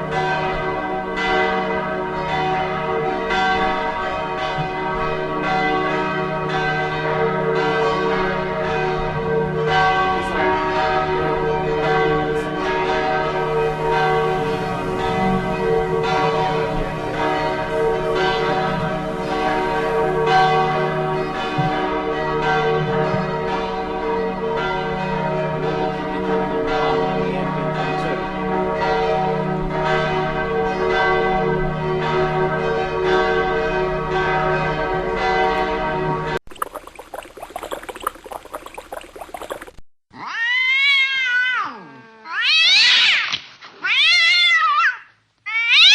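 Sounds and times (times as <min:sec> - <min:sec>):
church bells ringing: 0:00.0 - 0:36.4.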